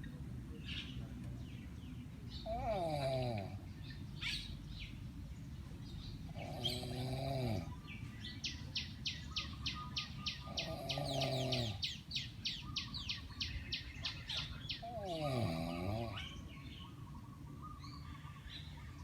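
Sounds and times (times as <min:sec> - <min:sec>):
person snoring loudly: 0:02.5 - 0:03.6, 0:06.3 - 0:07.7, 0:10.6 - 0:11.8, 0:14.9 - 0:16.2.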